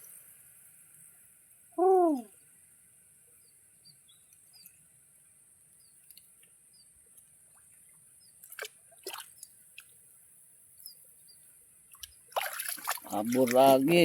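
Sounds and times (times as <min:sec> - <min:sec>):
small water drips: 0:06.0 - 0:11.0, 0:11.8 - 0:14.0.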